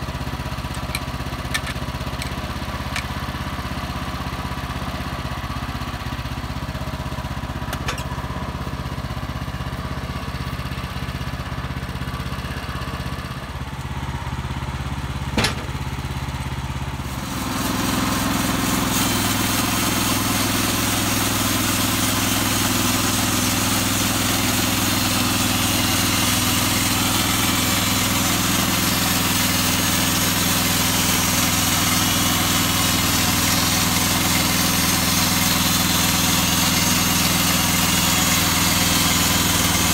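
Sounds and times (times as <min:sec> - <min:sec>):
band saw cutting log: 0:00.0 - 0:13.4, 0:15.0 - 0:39.9
sawmill engine running: 0:00.0 - 0:39.9.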